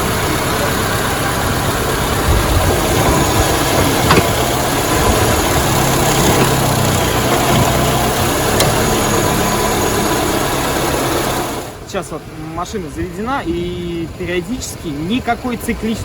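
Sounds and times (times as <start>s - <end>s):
car engine idling: 0.0s - 16.0s
hard metallic knocks: 2.2s - 10.1s.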